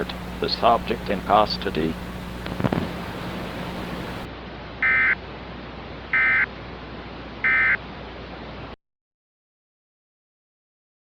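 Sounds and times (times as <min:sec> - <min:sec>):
steady hiss: 0:00.0 - 0:04.3.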